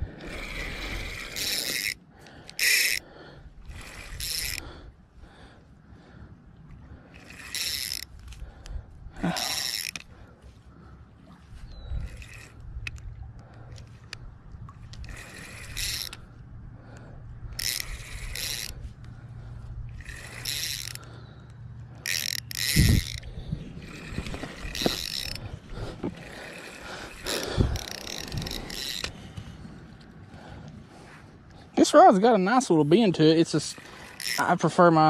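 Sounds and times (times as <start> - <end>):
fishing reel whirring: 0.0 - 5.0, 7.0 - 10.3, 11.6 - 14.2, 14.8 - 29.2, 32.9 - 35.0.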